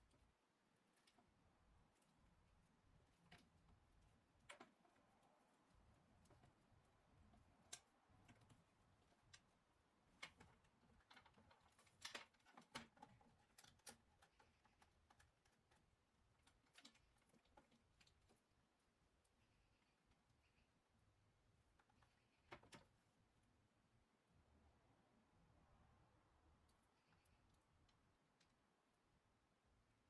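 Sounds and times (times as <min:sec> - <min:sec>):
faint irregular clicks: 0:00.0 - 0:20.8, 0:26.6 - 0:30.0.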